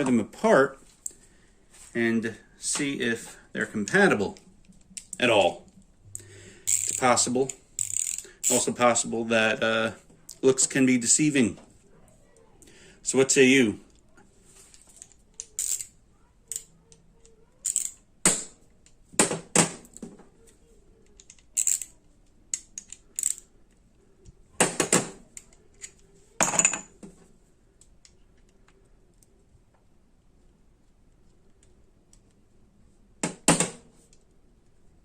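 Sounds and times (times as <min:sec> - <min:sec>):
metal ratchets clinking: 0:06.7 - 0:08.7, 0:15.5 - 0:15.9, 0:17.6 - 0:18.0, 0:21.3 - 0:21.9, 0:22.8 - 0:23.5.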